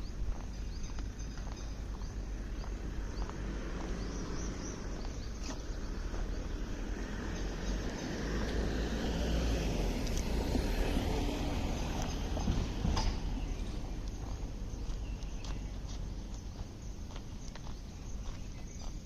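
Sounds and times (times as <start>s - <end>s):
small birds chirping: 0.0s - 19.0s
footsteps: 11.8s - 19.0s.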